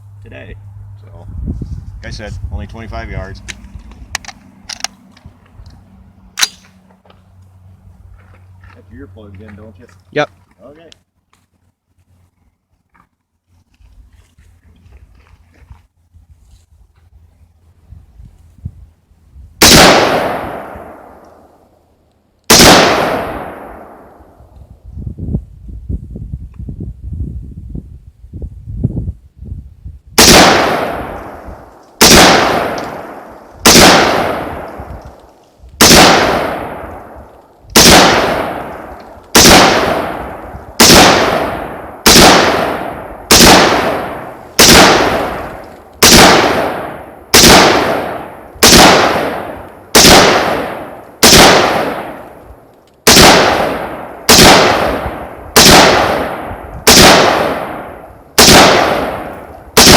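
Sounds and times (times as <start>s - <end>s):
rifle shots: 6.4s - 6.7s, 19.6s - 21.6s, 22.5s - 24.4s, 30.2s - 35.2s, 35.8s - 59.9s.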